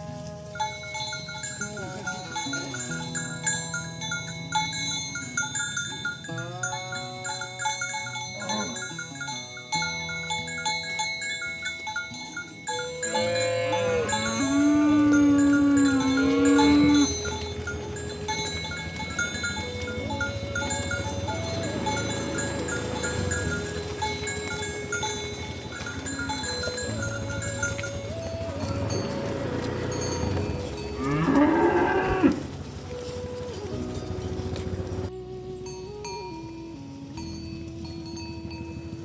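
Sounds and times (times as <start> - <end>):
cowbells clanking: 0.0 - 39.0
cows mooing: 6.3 - 9.3, 12.7 - 35.1.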